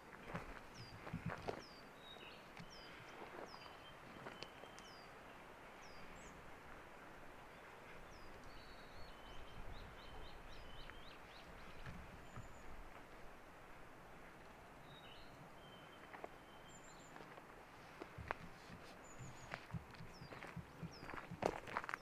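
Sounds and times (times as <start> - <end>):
soft footsteps on trail: 0.0 - 22.0
birds calling: 0.3 - 5.2, 7.5 - 13.0, 17.9 - 22.0.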